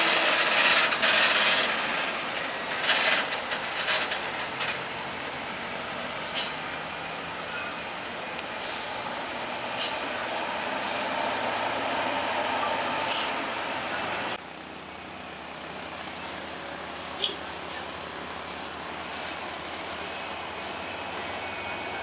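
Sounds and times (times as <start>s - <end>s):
heavy trucks running: 0.0s - 22.0s
air brake hisses: 6.2s - 6.8s, 8.0s - 14.0s.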